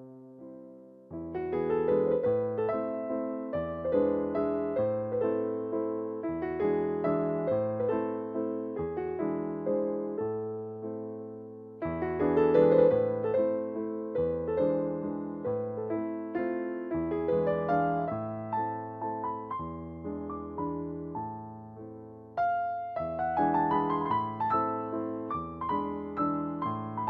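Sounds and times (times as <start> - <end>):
gentle piano melody: 0.0 - 27.0.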